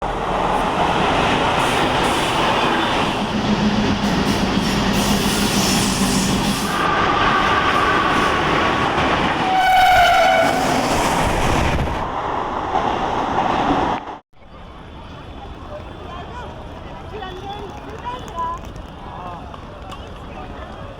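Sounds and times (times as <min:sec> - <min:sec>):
train rumbling on rails: 0:00.0 - 0:20.9
train horn blast: 0:09.4 - 0:10.9.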